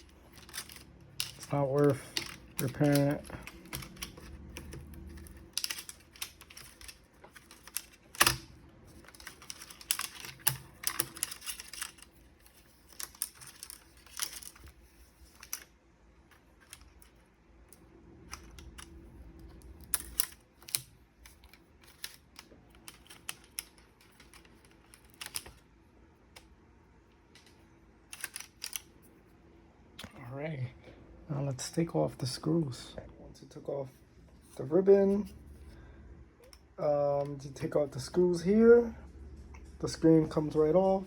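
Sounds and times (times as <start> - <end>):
laptop plastic parts clicking: 0.0 - 26.5, 27.1 - 29.1.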